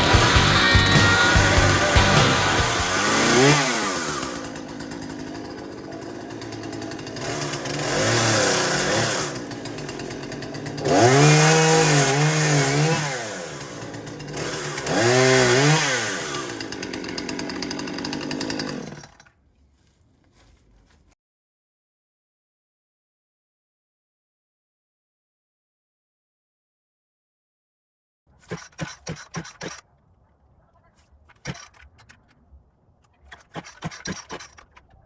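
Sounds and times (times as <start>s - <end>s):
chainsaw revving and idling: 0.0s - 19.3s, 33.3s - 34.8s.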